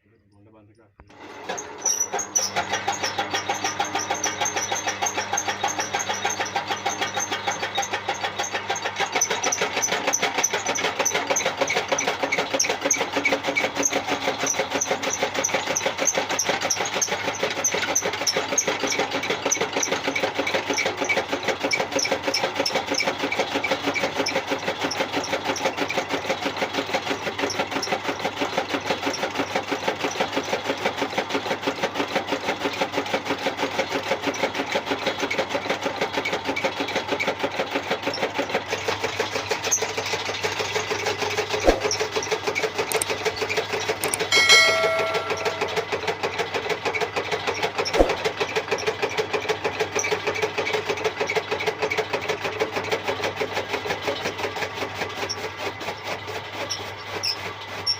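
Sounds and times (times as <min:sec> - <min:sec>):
chaff cutter clattering: 0:42.9 - 0:43.1.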